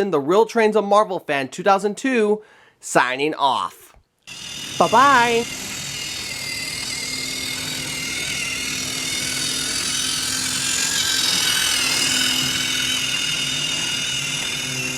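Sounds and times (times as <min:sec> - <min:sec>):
small motor whirring: 0:04.3 - 0:14.9.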